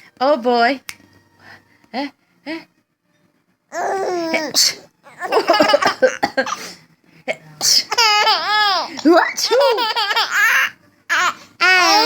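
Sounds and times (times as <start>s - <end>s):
baby laughing: 5.1s - 6.2s, 7.9s - 12.0s.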